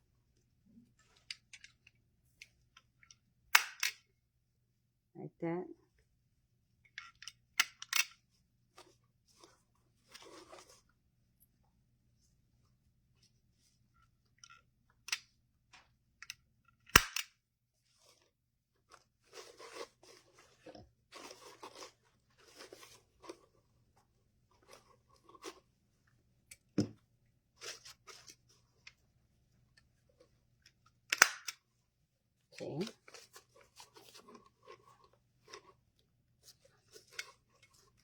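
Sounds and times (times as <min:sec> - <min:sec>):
sharp clicks and snaps: 0:16.9 - 0:17.3, 0:31.1 - 0:31.6
ribbon crinkling and rustling: 0:17.8 - 0:26.1, 0:32.5 - 0:38.0.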